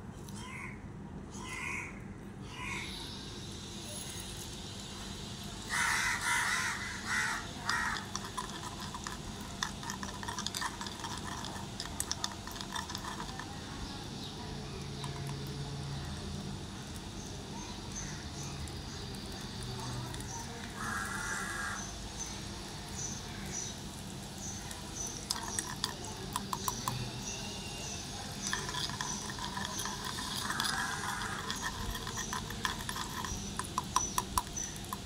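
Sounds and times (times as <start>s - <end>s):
crows cawing: 5.7s - 8.1s, 20.8s - 21.9s.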